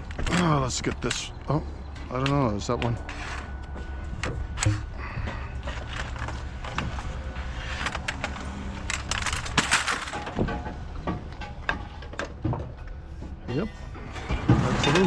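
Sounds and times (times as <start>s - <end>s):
scrap metal clattering: 2.9s - 15.0s
scraping rattle: 4.6s - 15.0s.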